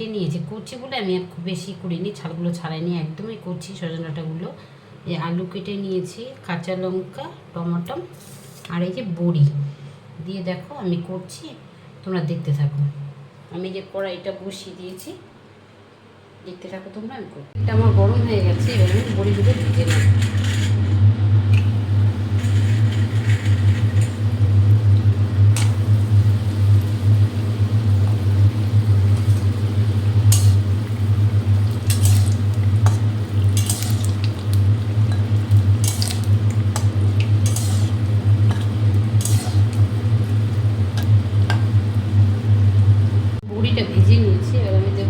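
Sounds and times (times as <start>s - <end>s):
steady low hum: 15.3s - 45.0s
metal spatula scraping a pan: 18.6s - 20.9s, 22.2s - 24.4s, 30.3s - 31.0s, 31.6s - 34.5s, 35.1s - 39.9s
dumplings frying in hot oil: 21.6s - 43.4s.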